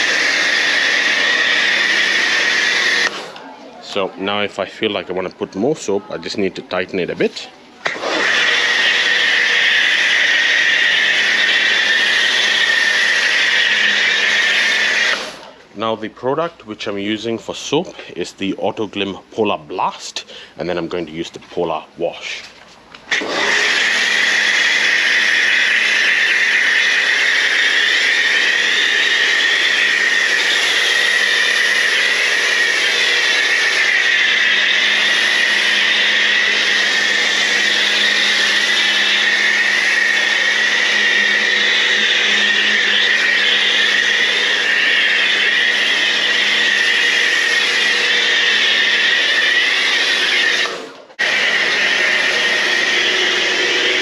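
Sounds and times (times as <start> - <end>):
pressure washer motor humming: 0.0 - 3.5, 7.2 - 15.7, 23.1 - 54.0.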